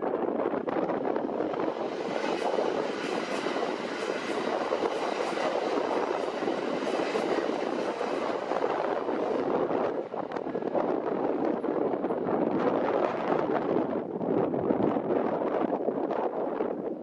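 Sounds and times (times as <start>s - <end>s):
train running past: 0.4s - 13.6s.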